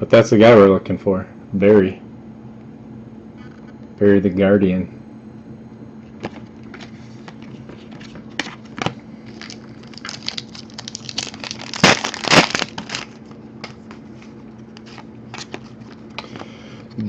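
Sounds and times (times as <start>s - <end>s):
cards clicking and rustling: 6.2s - 17.0s.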